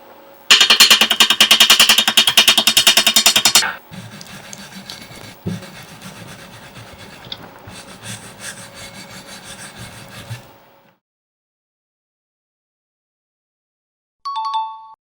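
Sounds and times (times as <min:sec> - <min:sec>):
sharp knock: 0:00.5 - 0:10.4
tool scraping on iron: 0:00.5 - 0:10.6.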